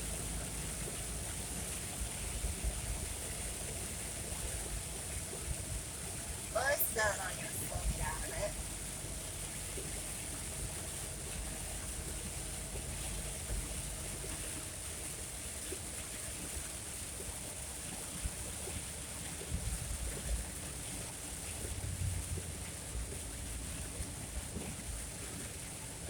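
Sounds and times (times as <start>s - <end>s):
tyres on wet road: 0.0s - 14.8s
heavy rain on a truck: 0.0s - 26.0s.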